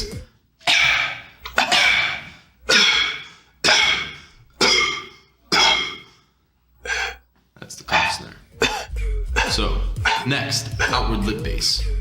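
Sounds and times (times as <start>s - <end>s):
beatboxed cough snares: 7.9s - 11.2s.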